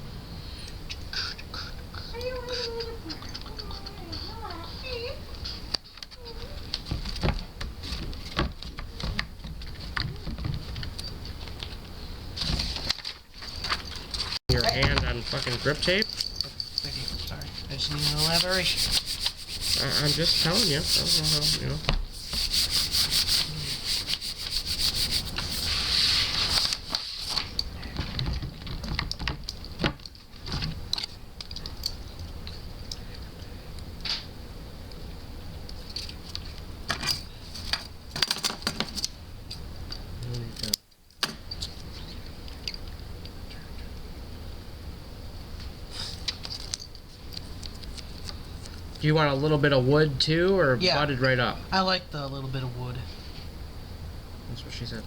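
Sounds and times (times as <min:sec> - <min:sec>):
grip tape crackling and scraping: 0:09.6 - 0:27.6, 0:46.0 - 0:49.0.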